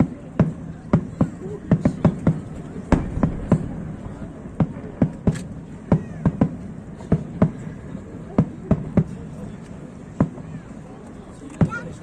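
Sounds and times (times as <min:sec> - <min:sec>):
fireworks bangs: 0:00.0 - 0:07.6.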